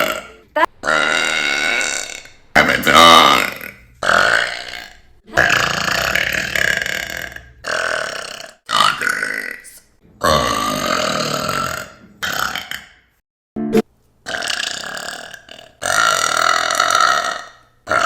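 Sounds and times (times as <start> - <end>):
woman burping loudly: 0.0 - 2.3.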